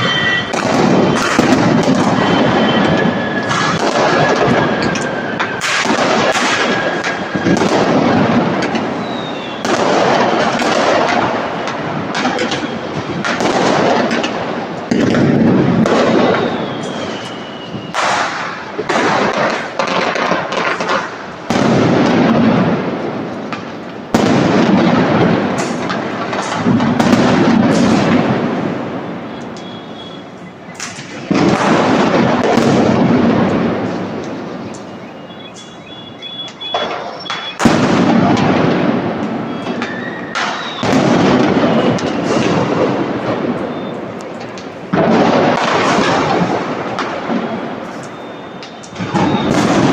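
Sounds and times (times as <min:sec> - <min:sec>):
faint falling whistles: 0:00.0 - 0:07.8, 0:08.8 - 0:09.7, 0:12.5 - 0:13.2, 0:16.2 - 0:18.2, 0:29.2 - 0:31.0, 0:34.5 - 0:37.7, 0:39.4 - 0:42.6, 0:43.6 - 0:44.1, 0:47.3 - 0:49.8
fireworks booming: 0:00.0 - 0:49.9
fireworks crackling: 0:00.0 - 0:49.9.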